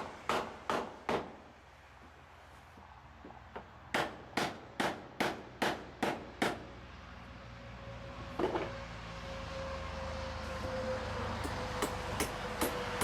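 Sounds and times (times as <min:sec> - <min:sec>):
hammer striking nail: 0:04.0 - 0:06.6, 0:11.4 - 0:13.0.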